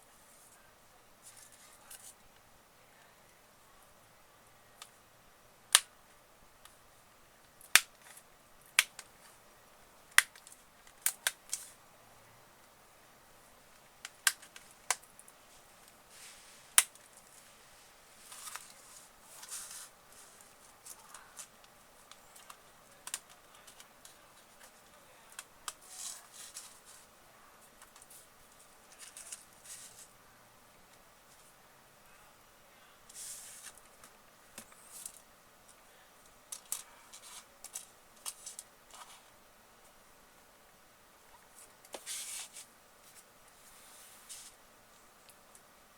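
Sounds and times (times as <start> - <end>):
small parts scraping and rustling: 14.4 - 27.1, 27.8 - 30.1, 33.1 - 35.8, 36.5 - 39.3, 41.6 - 44.6
sharp plastic clicks and snaps: 22.1 - 24.2.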